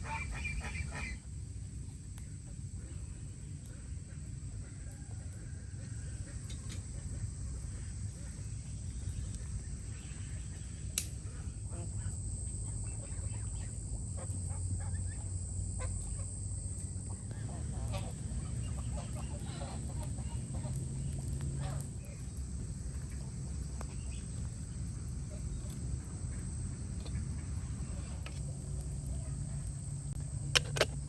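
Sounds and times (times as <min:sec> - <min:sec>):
outdoor background noise: 0:00.0 - 0:31.0
sharp click: 0:11.0 - 0:11.2
poultry calling: 0:12.9 - 0:16.4, 0:17.0 - 0:22.1.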